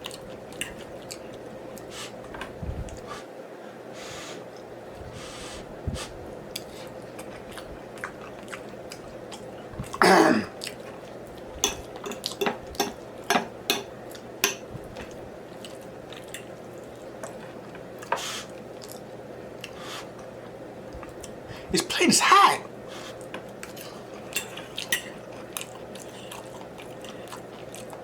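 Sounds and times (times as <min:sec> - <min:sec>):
person chewing with mouth smacks: 0:00.0 - 0:02.2, 0:06.5 - 0:12.4, 0:14.9 - 0:20.3, 0:23.1 - 0:28.0.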